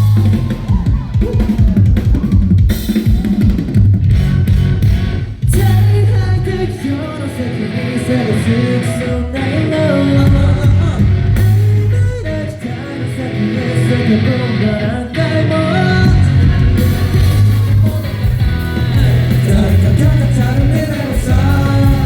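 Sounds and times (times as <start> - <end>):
heavy kick drum: 0.0 - 6.0, 10.3 - 11.7, 16.0 - 22.0
live pop band over loudspeakers: 0.0 - 22.0
person singing: 5.5 - 22.0.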